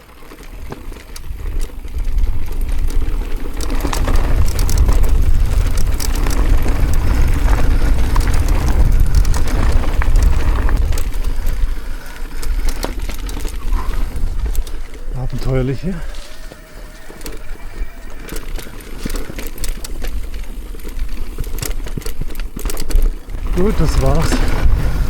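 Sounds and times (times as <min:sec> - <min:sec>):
bike clicks and rattles: 0:00.0 - 0:25.0
wind buffeting microphone: 0:01.2 - 0:21.2, 0:21.9 - 0:25.0.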